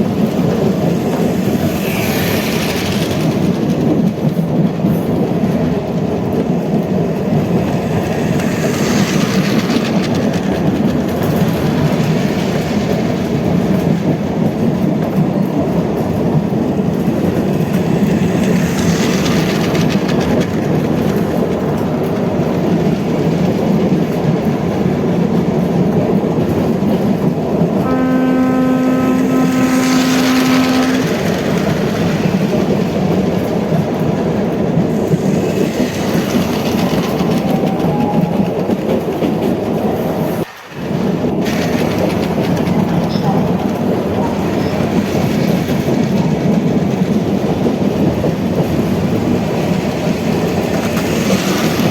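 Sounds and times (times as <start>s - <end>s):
train rolling rumble: 0.0s - 51.9s
train horn blast: 27.8s - 31.8s.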